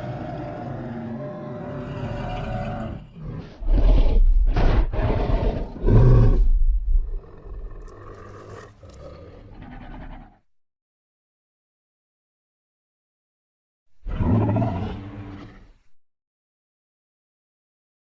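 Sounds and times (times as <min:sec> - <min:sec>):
creature growling and roaring: 0:00.0 - 0:10.4, 0:14.0 - 0:15.8.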